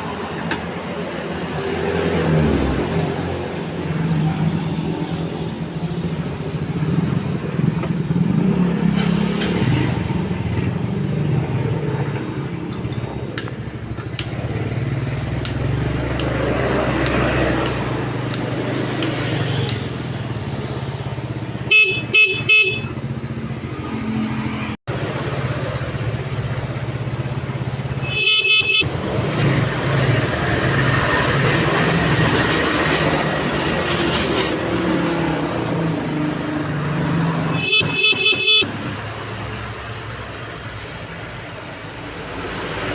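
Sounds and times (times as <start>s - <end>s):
scooter engine idling: 13.4s - 16.3s, 24.9s - 31.8s.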